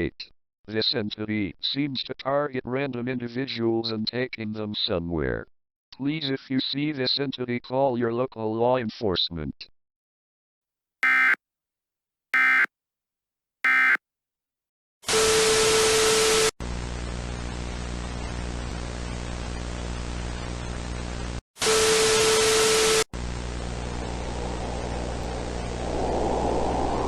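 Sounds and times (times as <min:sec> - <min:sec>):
warbling data bleeps: 0:11.0 - 0:11.4, 0:12.4 - 0:12.7, 0:13.7 - 0:14.0.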